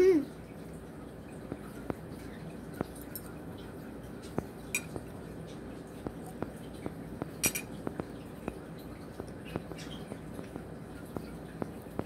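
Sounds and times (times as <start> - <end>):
cutlery clinking against a bowl: 4.7 - 5.0, 7.4 - 8.0.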